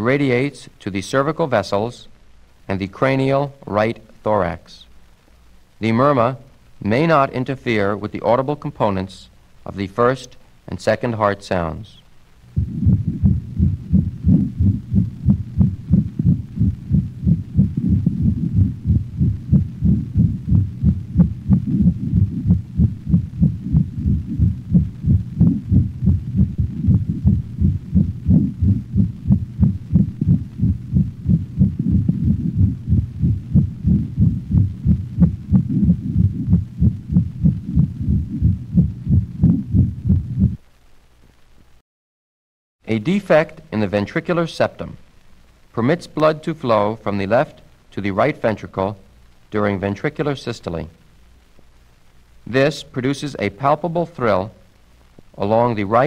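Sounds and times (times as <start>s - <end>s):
fast regular heartbeats: 12.5s - 40.6s
heart murmur: 12.6s - 40.6s.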